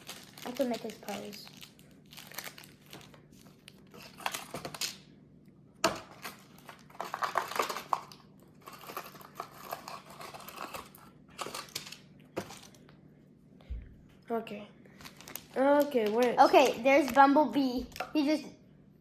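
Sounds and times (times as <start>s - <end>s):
packaging rustling: 0.0s - 5.0s, 5.9s - 12.8s, 15.0s - 18.1s.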